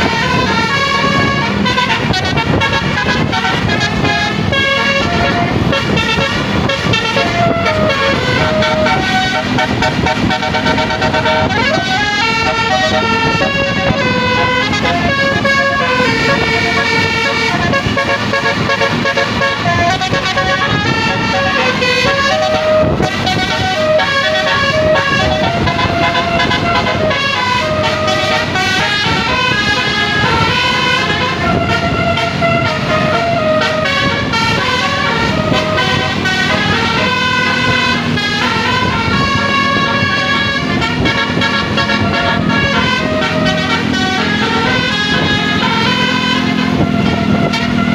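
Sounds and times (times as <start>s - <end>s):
low engine rumble: 0.0s - 47.9s
melodic air horn playing a tune: 0.0s - 47.9s.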